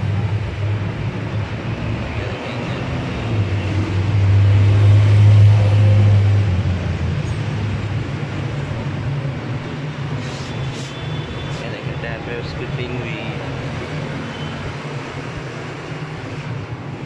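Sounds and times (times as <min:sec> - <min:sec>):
vehicle engine hum passing by: 0:00.0 - 0:08.9
street traffic: 0:00.0 - 0:17.0.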